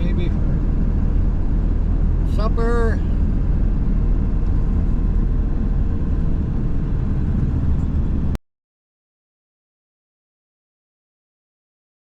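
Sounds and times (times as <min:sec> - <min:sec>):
vehicle road and engine rumble: 0:00.0 - 0:08.4.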